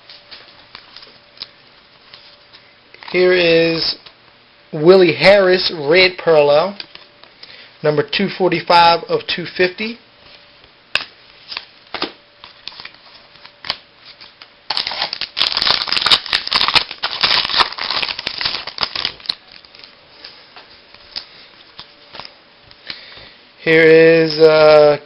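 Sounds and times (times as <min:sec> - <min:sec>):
cards rustling and crackling: 0:11.0 - 0:22.4.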